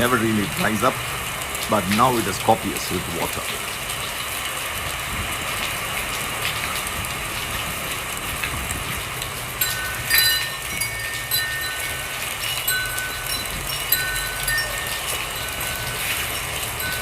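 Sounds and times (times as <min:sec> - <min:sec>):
wind and drizzle: 0:00.0 - 0:17.0
wind rumbling on microphone: 0:04.8 - 0:05.8, 0:06.7 - 0:17.0
wind chime ringing: 0:09.6 - 0:17.0.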